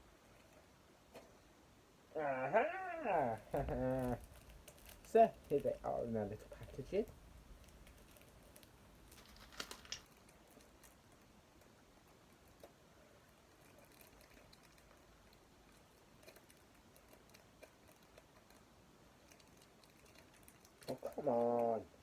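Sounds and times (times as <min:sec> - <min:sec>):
crinkly packaging clicks: 0:03.4 - 0:11.7, 0:13.6 - 0:21.7.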